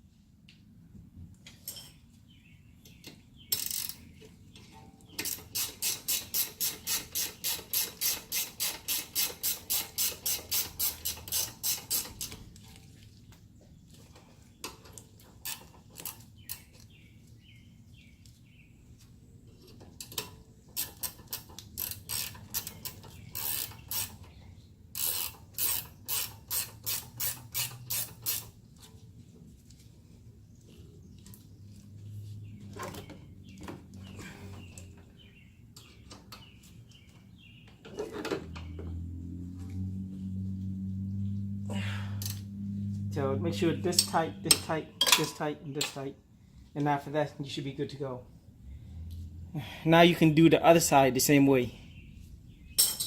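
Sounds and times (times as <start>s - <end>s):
ratchet wrench clicking: 3.5s - 4.0s, 5.2s - 12.4s, 20.8s - 24.2s, 24.9s - 28.6s.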